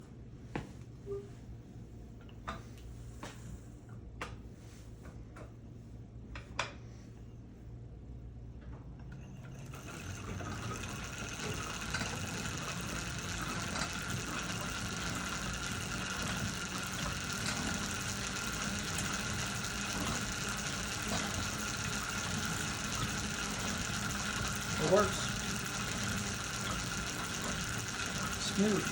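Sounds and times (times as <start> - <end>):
pedal lathe flywheel whirring: 9.0 - 28.9.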